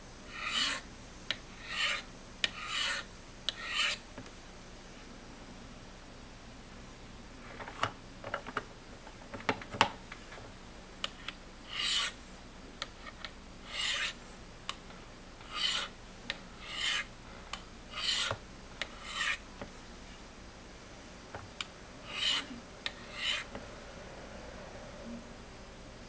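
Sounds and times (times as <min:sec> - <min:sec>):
knife scraping on ceramic rods: 0:00.3 - 0:00.8, 0:01.6 - 0:04.0, 0:11.7 - 0:12.2, 0:13.0 - 0:14.2, 0:15.4 - 0:16.0, 0:16.6 - 0:17.1, 0:17.9 - 0:19.4, 0:22.1 - 0:23.5.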